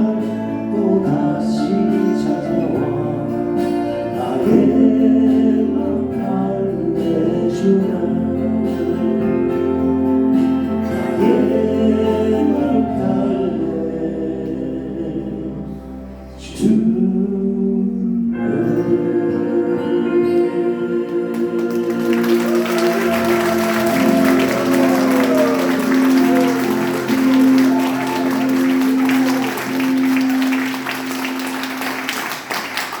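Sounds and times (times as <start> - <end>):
audience applause: 21.3 - 33.0.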